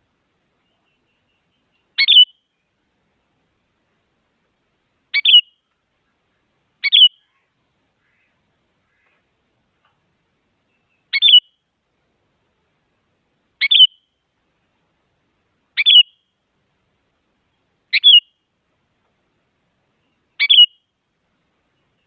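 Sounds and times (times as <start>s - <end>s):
bird sharp calls: 0.6s - 2.5s, 5.1s - 5.6s, 6.8s - 9.2s, 10.7s - 11.6s, 13.6s - 14.1s, 15.8s - 16.2s, 17.9s - 18.4s, 20.0s - 20.9s.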